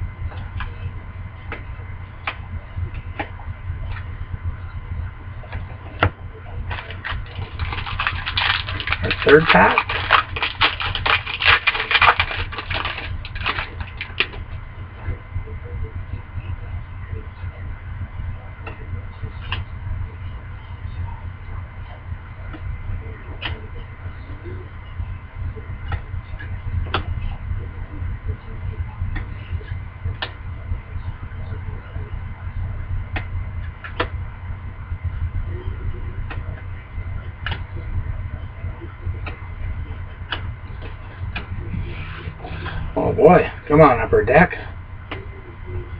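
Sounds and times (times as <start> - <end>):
low hum: 0.0 - 45.9
foil wrapper crinkling and tearing: 6.7 - 14.4.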